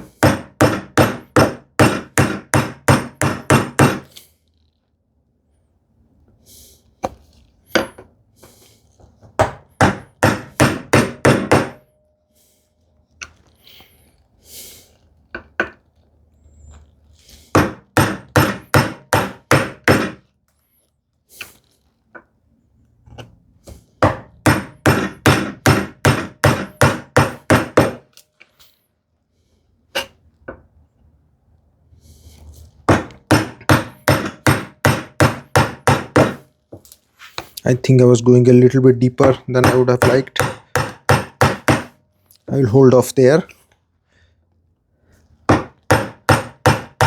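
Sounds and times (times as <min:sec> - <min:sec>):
chisel struck chopping wood: 0:00.2 - 0:04.1, 0:09.4 - 0:11.8, 0:17.6 - 0:20.2, 0:24.0 - 0:28.0, 0:32.9 - 0:36.4, 0:39.2 - 0:42.0, 0:45.5 - 0:47.0.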